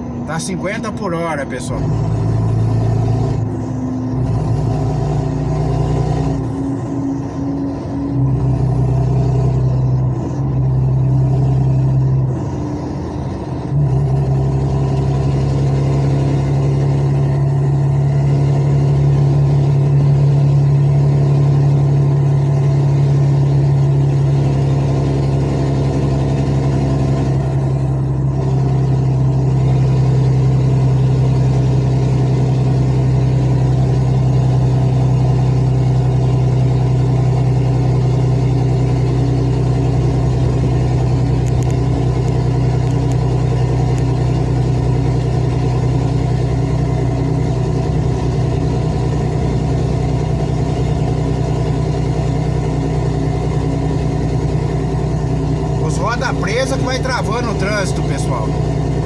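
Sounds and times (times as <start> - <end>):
vehicle engine humming: 0.0 - 59.0.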